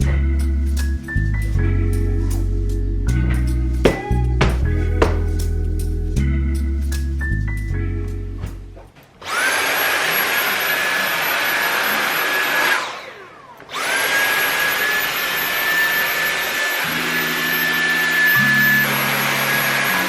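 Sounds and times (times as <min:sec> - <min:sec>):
appliance motor whining: 0:09.2 - 0:20.0.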